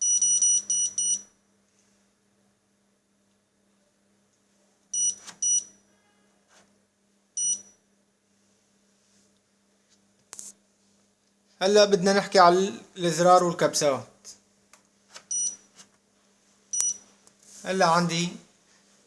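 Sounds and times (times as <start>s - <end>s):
faint steady hum: 0.0s - 19.0s
short high beeps: 15.3s - 15.6s, 16.8s - 17.0s.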